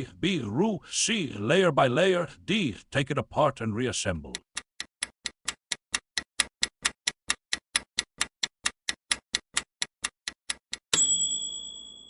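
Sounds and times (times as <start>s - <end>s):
timer ticking fast: 4.0s - 11.0s
bell-like ding: 10.9s - 12.0s.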